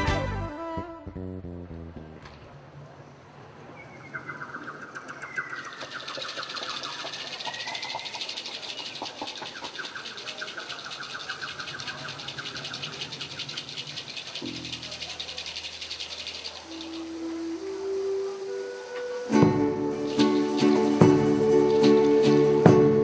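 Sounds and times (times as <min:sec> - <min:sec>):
bird whistled glide: 0:03.7 - 0:23.0
bird rapid pulsed trill: 0:03.8 - 0:17.3
high fast-pulsing chirring: 0:05.4 - 0:17.2.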